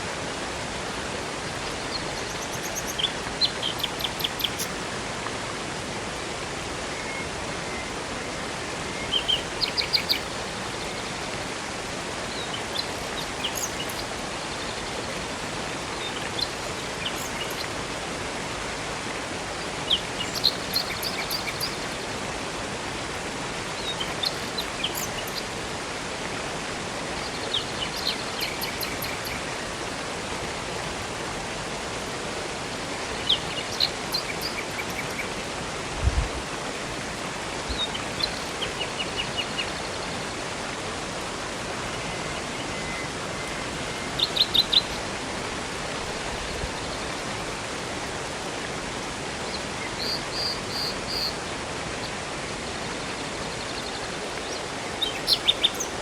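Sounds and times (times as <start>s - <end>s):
river and waterfall rushing: 0.0s - 56.0s
songbirds chirping and trilling: 1.6s - 4.9s, 8.8s - 11.4s, 12.1s - 18.0s, 19.6s - 22.2s, 23.7s - 25.6s, 27.1s - 29.5s, 42.1s - 45.1s, 49.5s - 52.2s, 53.5s - 56.0s.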